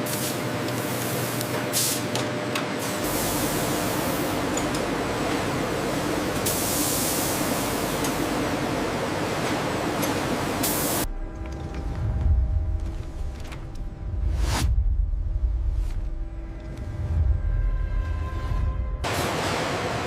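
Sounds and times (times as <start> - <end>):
factory machinery hissing: 0.0 - 11.1.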